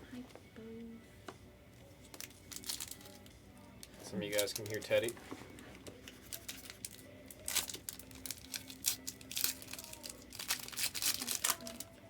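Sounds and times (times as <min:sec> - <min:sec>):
card pack wrapper crinkling: 0:02.2 - 0:03.2, 0:04.3 - 0:05.2, 0:06.2 - 0:11.9.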